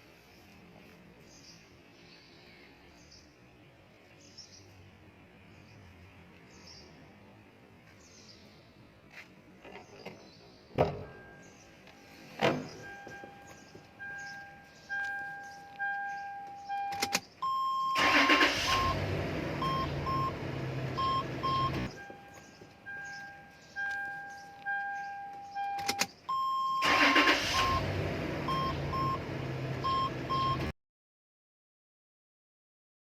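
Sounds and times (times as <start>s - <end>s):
dashboard warning chimes: 11.0s - 30.7s
short repeated beeps: 12.8s - 18.1s, 19.6s - 20.4s, 21.0s - 27.0s, 29.8s - 30.7s
engine cranking and idling: 18.0s - 26.1s, 26.8s - 30.7s.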